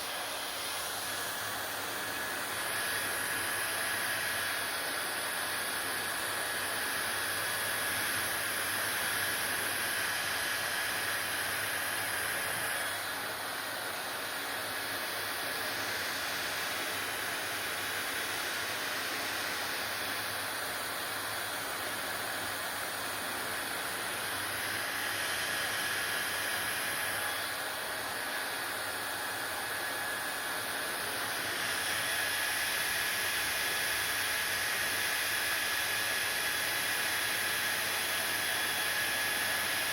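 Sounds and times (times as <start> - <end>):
hair dryer blowing: 0.0 - 39.9.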